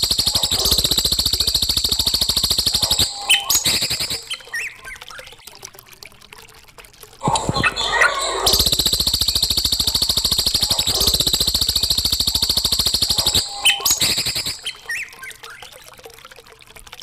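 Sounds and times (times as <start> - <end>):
songbird buzzy trill: 0.0 - 4.8, 7.4 - 15.3
bird chirps: 2.0 - 5.0, 7.2 - 15.4.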